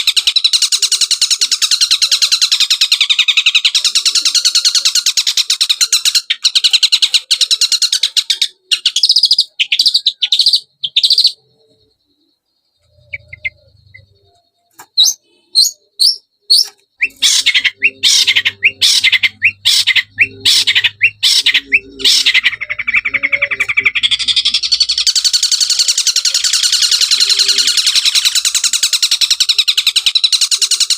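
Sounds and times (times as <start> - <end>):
bird chattering song: 0.0 - 30.9.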